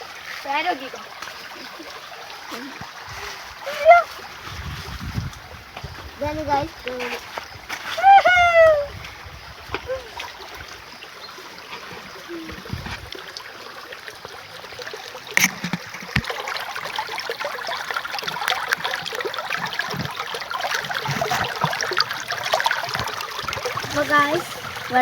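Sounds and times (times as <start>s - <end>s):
person wading through water: 0.0s - 13.6s, 14.8s - 25.0s
stream trickling: 0.0s - 25.0s.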